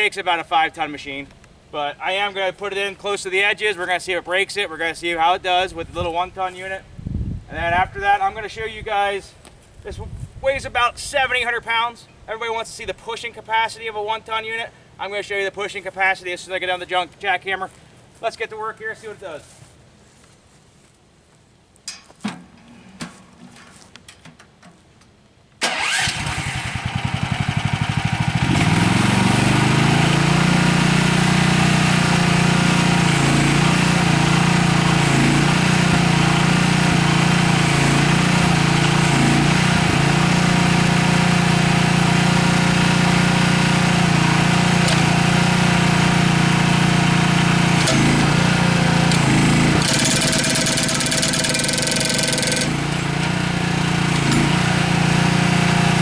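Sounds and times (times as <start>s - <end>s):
loader engine running: 25.7s - 56.0s.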